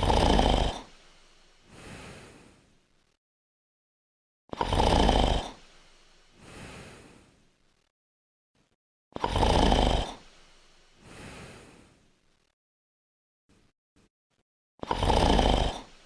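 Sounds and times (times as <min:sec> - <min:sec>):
person snoring: 0:00.0 - 0:02.7, 0:04.5 - 0:07.4, 0:09.2 - 0:10.4, 0:11.0 - 0:12.0, 0:14.8 - 0:16.0.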